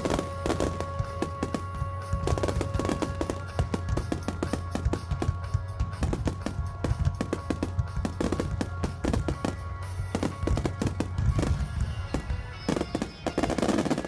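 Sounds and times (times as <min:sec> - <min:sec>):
fireworks bangs: 0:00.0 - 0:14.0
fireworks crackle: 0:00.0 - 0:14.0
music: 0:00.0 - 0:14.0.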